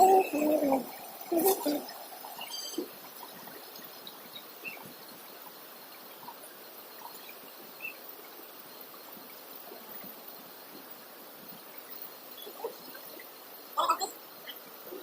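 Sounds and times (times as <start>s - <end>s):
faint high chirps: 0.0s - 3.0s
steady hiss: 0.0s - 15.0s.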